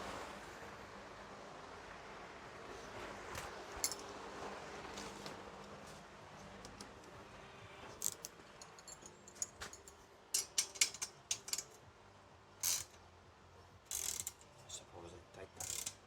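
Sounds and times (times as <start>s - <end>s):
metal hardware clicking and clinking: 3.8s - 4.1s, 8.0s - 11.8s, 12.6s - 13.0s, 13.9s - 14.8s, 15.6s - 16.0s.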